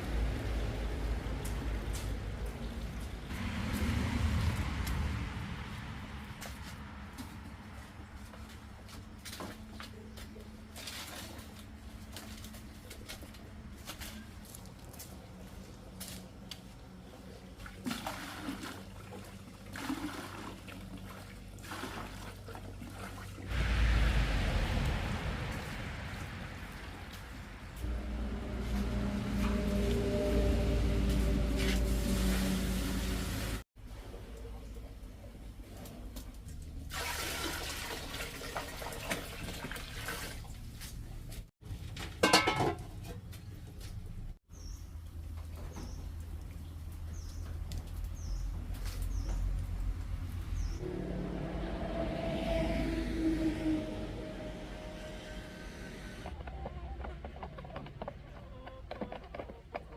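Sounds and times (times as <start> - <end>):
water pouring in a stream: 17.6 - 28.0, 36.8 - 40.7
water splashing: 17.6 - 33.6, 36.8 - 40.8.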